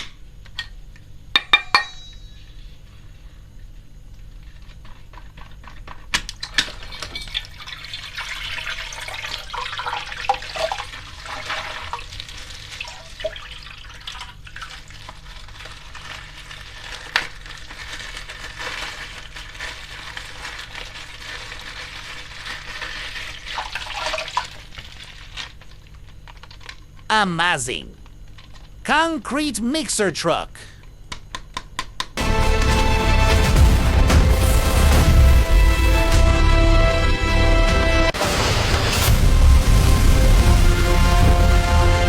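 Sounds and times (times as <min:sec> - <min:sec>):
water pouring and splashing: 0:07.2 - 0:16.1, 0:20.1 - 0:25.2.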